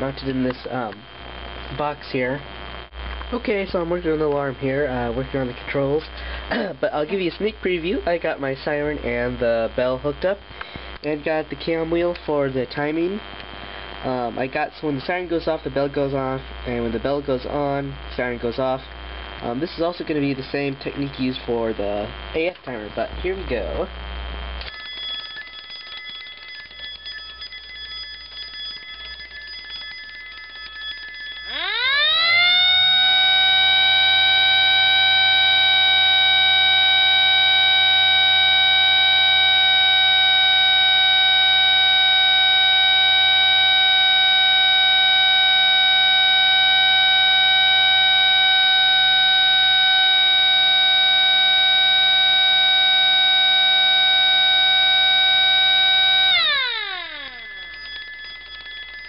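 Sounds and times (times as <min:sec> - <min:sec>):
siren winding up: 0:23.5 - 0:59.0
alarm bell ringing: 0:24.6 - 0:59.0.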